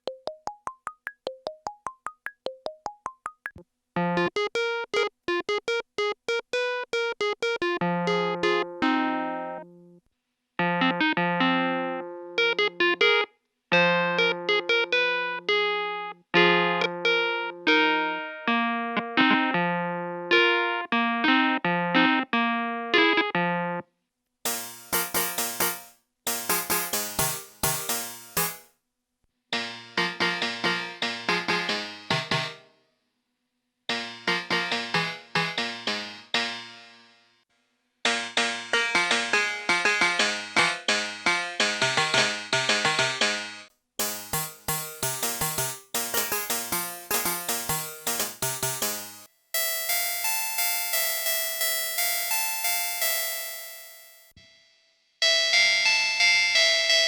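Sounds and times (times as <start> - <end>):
synthesizer plucked notes: 0.0 - 5.1, 24.5 - 28.6, 44.0 - 51.4.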